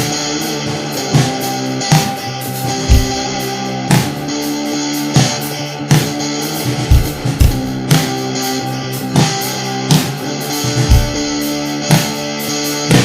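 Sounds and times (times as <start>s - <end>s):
guitar-led rock music: 0.0s - 13.0s
hard deep drum hits: 2.9s - 3.4s, 6.9s - 8.0s, 10.9s - 11.4s.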